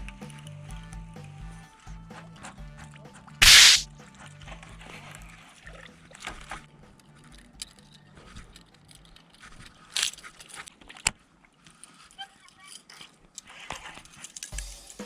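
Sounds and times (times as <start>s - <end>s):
fishing reel humming: 3.4s - 3.8s
short swish: 3.4s - 3.8s.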